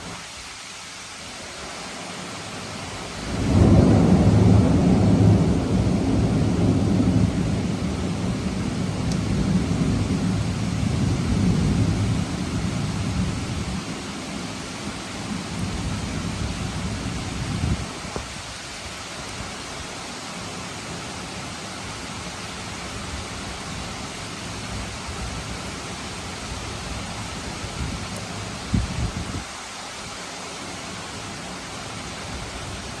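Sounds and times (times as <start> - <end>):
steady rain falling: 0.0 - 33.0
low rumble of thunder: 3.2 - 18.0, 27.7 - 29.5.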